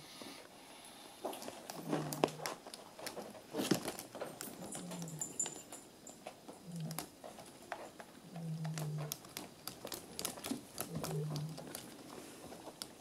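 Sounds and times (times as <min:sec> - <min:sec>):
kitten clawing scratching post: 0:08.6 - 0:13.0.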